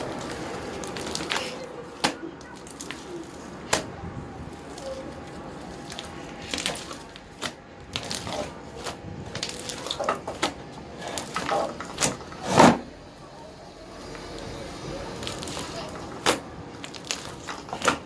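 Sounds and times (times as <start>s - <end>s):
slime squishing and popping: 0.0s - 11.4s, 15.2s - 18.0s.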